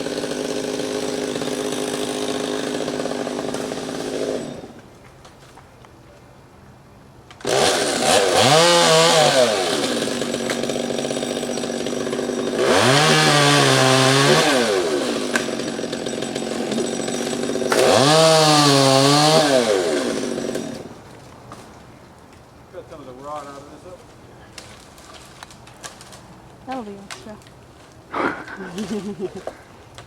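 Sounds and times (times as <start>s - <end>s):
chainsaw revving: 0.0s - 4.8s, 7.4s - 20.9s, 28.1s - 29.5s.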